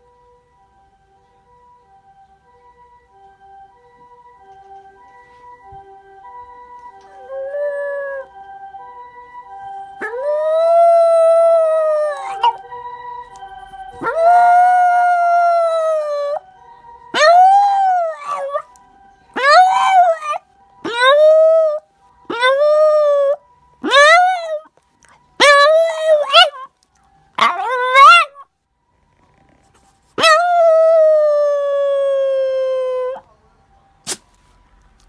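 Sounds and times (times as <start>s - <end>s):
dog howling: 7.0s - 8.3s, 10.0s - 12.6s, 13.7s - 16.4s, 17.1s - 18.7s, 19.4s - 24.7s, 25.4s - 26.7s, 27.4s - 28.4s, 30.2s - 33.2s.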